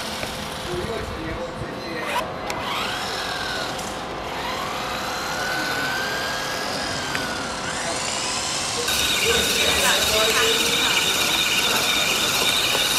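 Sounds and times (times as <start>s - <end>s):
toy car electric motor whining: 2.2s - 12.9s
drivetrain and tyre noise: 6.4s - 12.9s.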